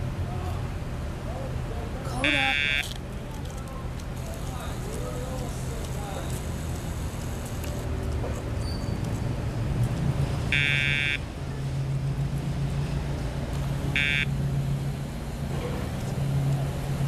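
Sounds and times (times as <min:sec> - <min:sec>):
short electronic beeps: 0:02.2 - 0:02.9, 0:10.6 - 0:11.2, 0:14.0 - 0:14.3.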